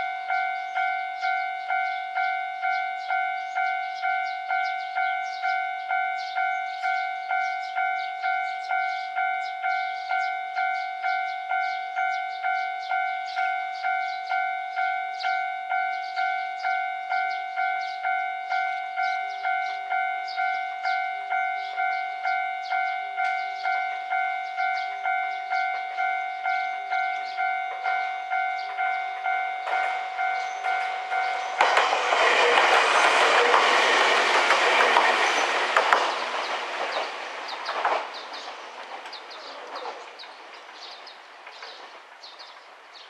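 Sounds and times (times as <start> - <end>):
level crossing warning bell: 0.0 - 41.8
train passing: 0.0 - 43.0
wheels clattering on rails: 21.8 - 43.0.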